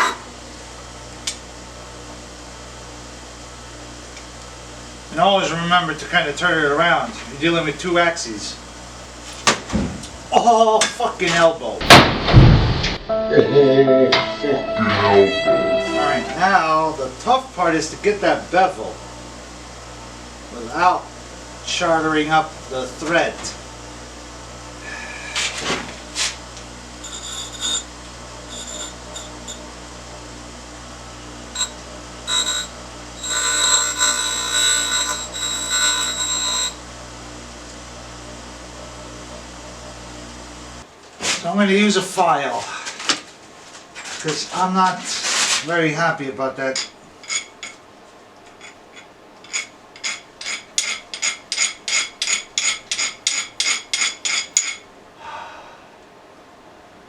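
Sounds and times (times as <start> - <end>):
power tool grinding steel: 0.0 - 0.4, 27.0 - 29.6, 31.6 - 36.9.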